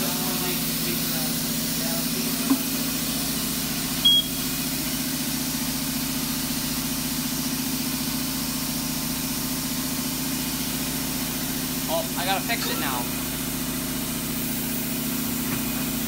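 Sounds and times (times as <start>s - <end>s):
low mechanical hum: 0.0s - 16.0s
short high beep: 4.0s - 4.5s.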